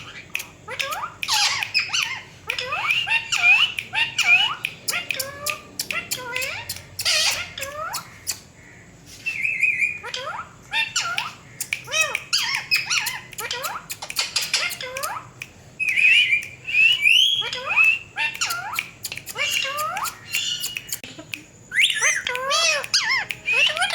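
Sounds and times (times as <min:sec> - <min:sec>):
parrot harsh squawks: 0:00.7 - 0:08.1
parrot whistled chirps: 0:15.8 - 0:21.0, 0:21.7 - 0:23.9.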